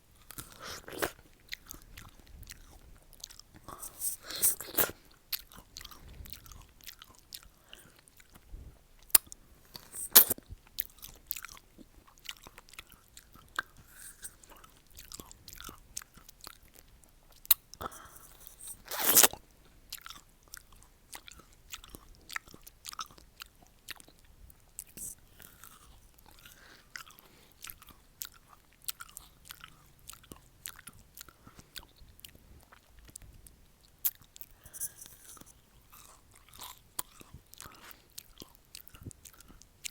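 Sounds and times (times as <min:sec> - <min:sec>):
person crunching pear: 0:00.2 - 0:07.5, 0:09.1 - 0:11.6, 0:13.6 - 0:16.6, 0:17.4 - 0:20.6, 0:34.0 - 0:39.9.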